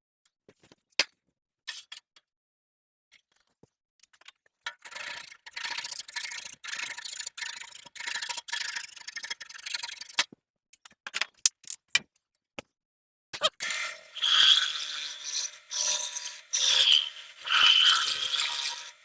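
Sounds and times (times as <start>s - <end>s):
scraping strokes on wood: 13.6s - 19.0s.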